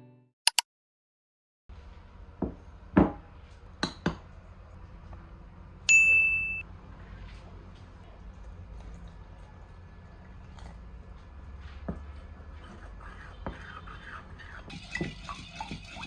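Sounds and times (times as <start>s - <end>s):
short electronic beep: 5.9s - 6.6s.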